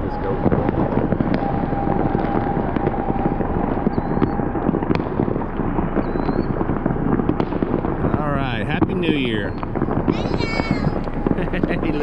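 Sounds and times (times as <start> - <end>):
fireworks crackling and banging: 0.0 - 12.0
low rumble: 0.0 - 12.0.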